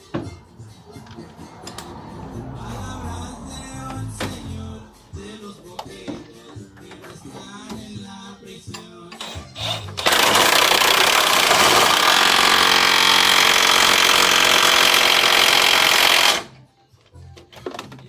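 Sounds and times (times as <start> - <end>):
impact wrench running: 9.2 - 16.5.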